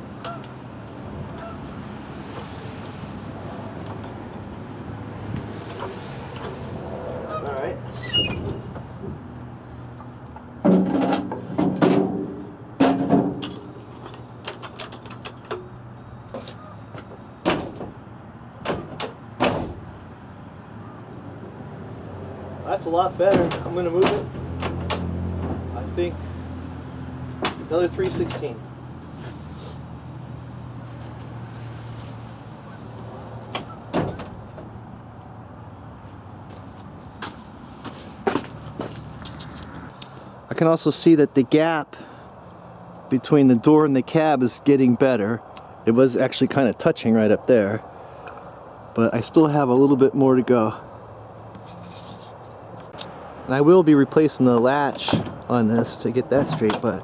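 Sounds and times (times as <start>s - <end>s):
truck door clunking: 7.9s - 20.1s, 22.8s - 29.2s, 32.6s - 34.9s, 54.5s - 57.0s.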